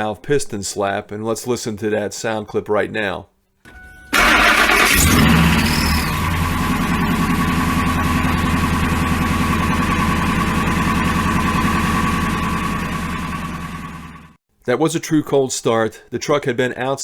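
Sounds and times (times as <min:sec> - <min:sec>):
engine idling with knocking: 0:04.2 - 0:14.4.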